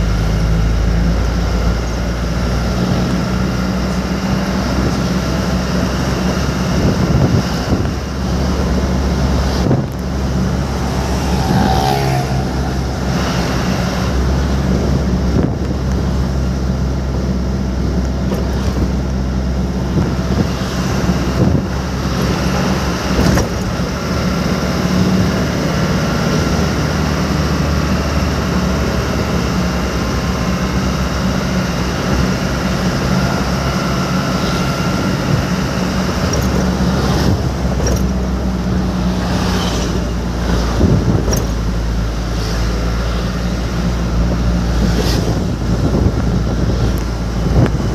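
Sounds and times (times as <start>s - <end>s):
road noise: 0.0s - 47.9s
vehicle engine hum: 0.0s - 47.9s
short wavering pitched sound: 9.3s - 15.0s.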